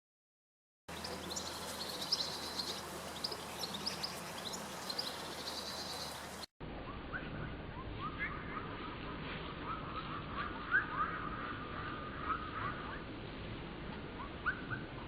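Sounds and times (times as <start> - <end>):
background hiss: 0.9 - 6.5
birds calling with rising chirps: 0.9 - 6.5, 7.1 - 13.1
songbirds chirping: 0.9 - 13.4.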